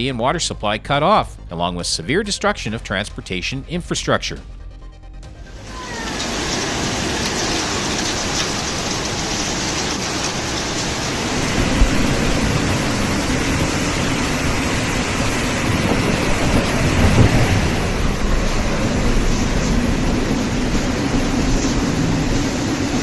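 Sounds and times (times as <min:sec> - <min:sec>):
heavy rain and water rushing: 0:05.3 - 0:23.0.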